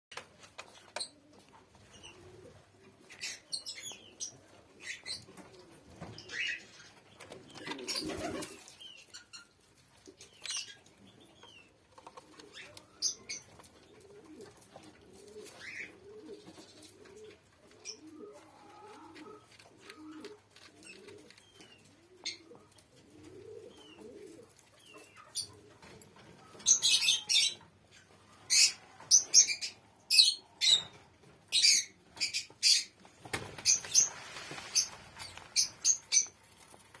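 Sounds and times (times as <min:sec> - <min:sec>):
doves cooing softly: 0:00.7 - 0:37.0
sharp rustling bursts: 0:33.0 - 0:37.0.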